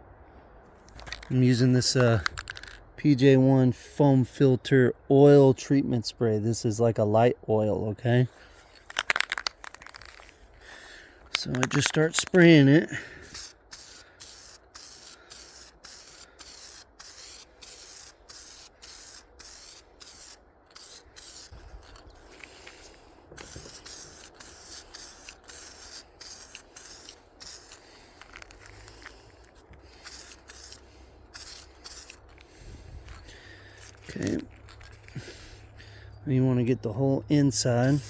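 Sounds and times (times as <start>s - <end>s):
aerosol can spraying: 13.2s - 22.0s, 23.4s - 29.2s, 30.0s - 32.6s.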